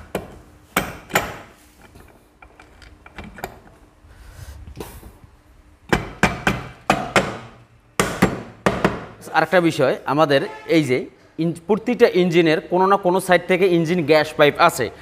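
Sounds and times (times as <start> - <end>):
hammer knocks on metal: 5.9 - 9.2.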